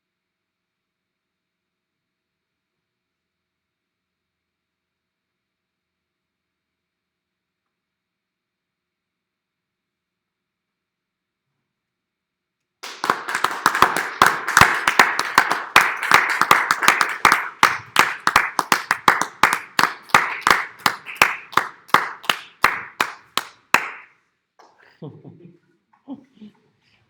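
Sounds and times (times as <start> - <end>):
small audience clapping: 12.8 - 25.0.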